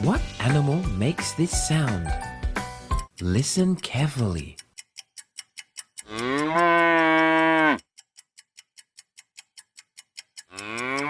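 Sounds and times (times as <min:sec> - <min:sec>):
clock-like ticking: 0:00.0 - 0:11.0
cow mooing: 0:06.0 - 0:07.8, 0:10.6 - 0:11.0.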